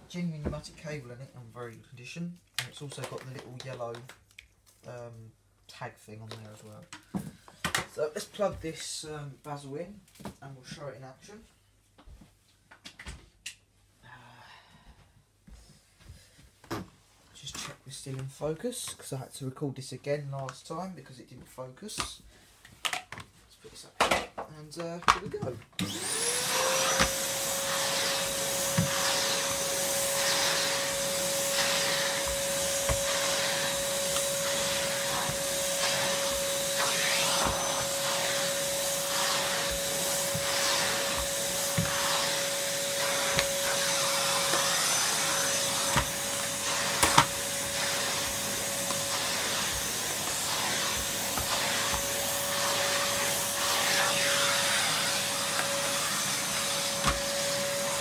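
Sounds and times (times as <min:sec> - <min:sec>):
vacuum cleaner whining: 0:25.1 - 0:58.0.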